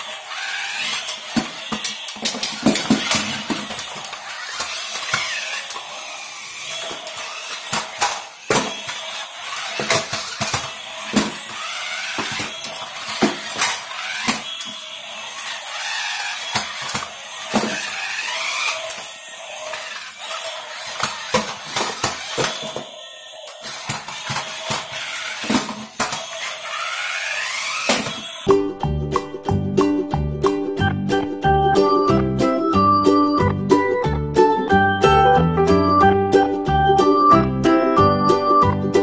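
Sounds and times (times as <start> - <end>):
toy car electric motors whirring: 0.0 - 28.5.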